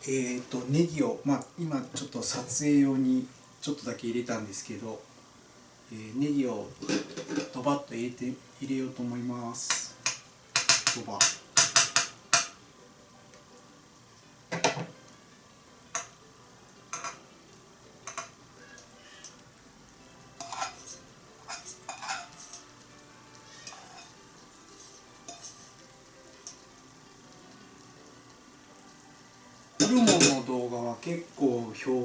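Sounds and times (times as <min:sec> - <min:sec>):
pot simmering sizzle: 0:00.0 - 0:32.0
utensil scraping iron pot: 0:20.4 - 0:22.7, 0:23.5 - 0:25.8, 0:29.8 - 0:30.4.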